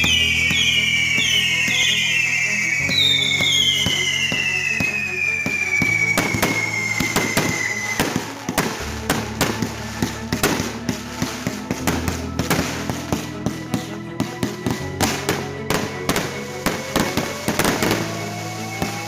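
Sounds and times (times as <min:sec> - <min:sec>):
firework whistle falling in pitch: 0:00.0 - 0:11.4, 0:15.2 - 0:19.0
fireworks bangs and crackling: 0:00.0 - 0:19.0.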